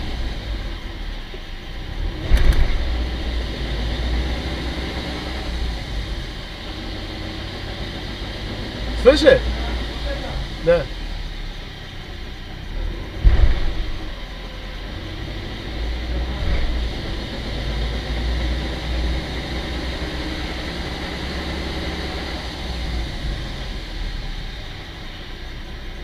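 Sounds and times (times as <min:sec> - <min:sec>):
car engine rumbling while driving: 0:00.0 - 0:26.0
loud thump: 0:02.2 - 0:03.0, 0:13.1 - 0:14.4, 0:16.3 - 0:17.1.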